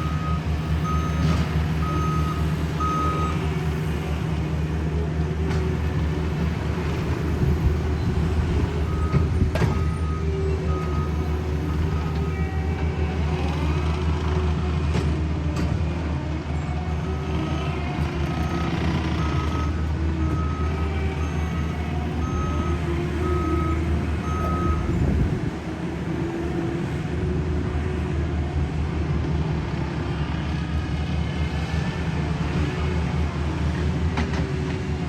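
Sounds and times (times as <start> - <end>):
reversing alarm beeping: 0.0 - 3.8, 18.3 - 25.2
diesel engine running: 0.0 - 35.0.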